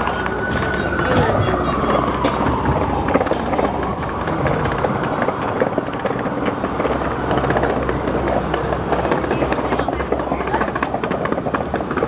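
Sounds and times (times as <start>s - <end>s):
falling whine: 0.0s - 8.3s
urban rumble: 0.0s - 12.0s.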